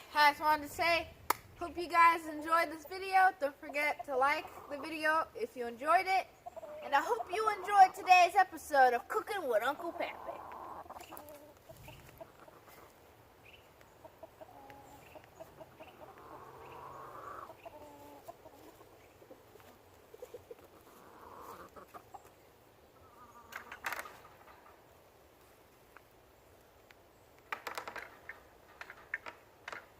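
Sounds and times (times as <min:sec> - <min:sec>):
chickens clucking: 0:01.6 - 0:27.1
drawn-out hen calls: 0:01.6 - 0:29.8.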